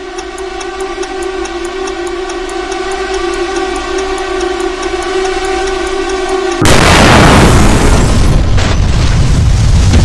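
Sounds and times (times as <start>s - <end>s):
quick regular ticking: 0.0s - 7.0s
electronic drone: 0.0s - 8.8s.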